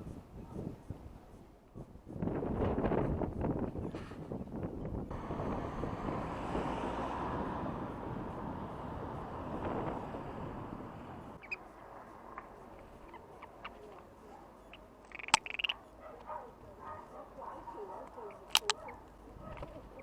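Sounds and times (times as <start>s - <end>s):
wind noise on microphone: 0.0s - 11.6s, 19.4s - 20.0s
sharp click: 14.7s - 15.8s, 18.5s - 18.9s
small clicks: 14.7s - 16.3s, 18.0s - 19.8s.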